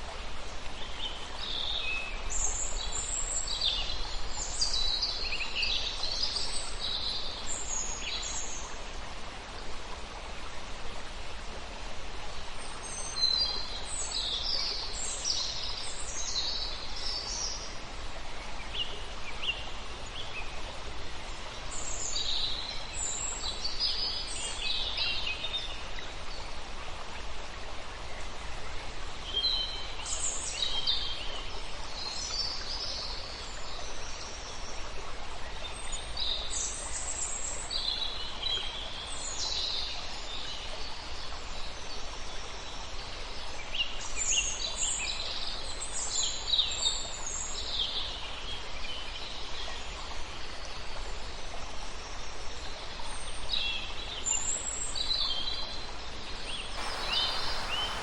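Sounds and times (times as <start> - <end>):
songbirds singing: 56.5 - 58.0
running water rushing: 56.6 - 58.0.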